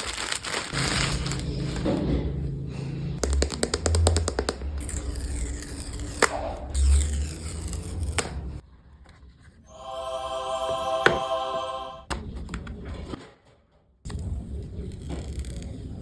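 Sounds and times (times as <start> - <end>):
packaging rustling and scraping: 0.0 - 2.2
sharp taps: 3.2 - 4.8.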